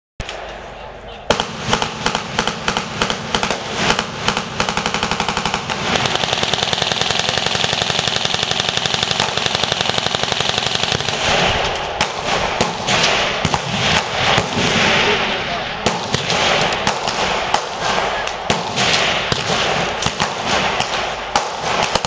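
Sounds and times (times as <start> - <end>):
rifle gunshots: 1.3 - 22.0.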